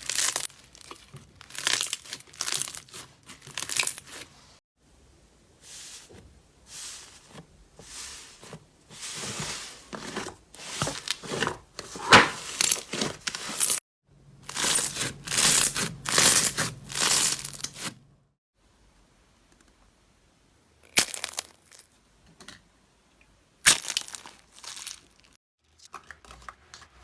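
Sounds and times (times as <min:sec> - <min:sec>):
slime squishing: 0:00.0 - 0:04.3.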